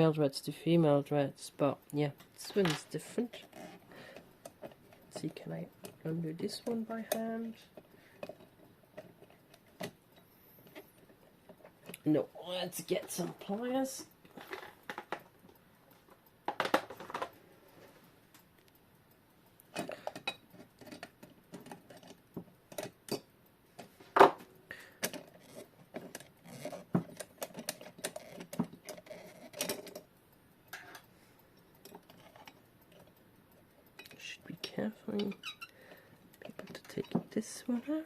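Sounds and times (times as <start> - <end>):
pliers clicking on metal parts: 19.6 - 23.3.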